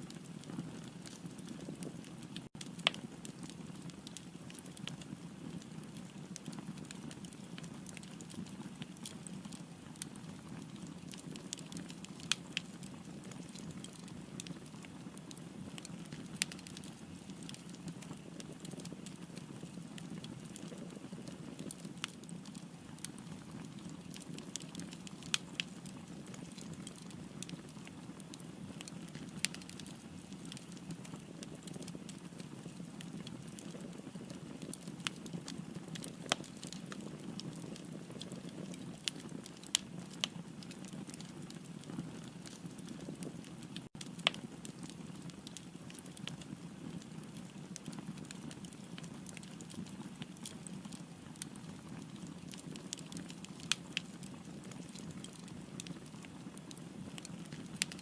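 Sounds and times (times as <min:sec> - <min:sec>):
fire crackling and popping: 0:00.0 - 0:58.0.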